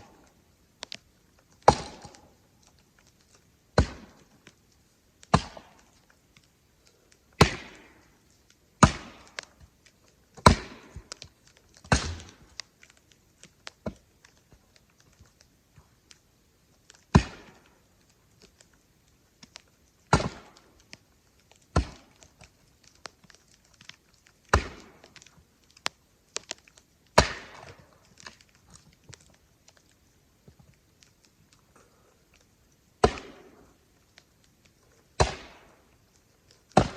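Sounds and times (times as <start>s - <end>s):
firewood knocking: 1.6s - 2.3s, 10.3s - 15.3s.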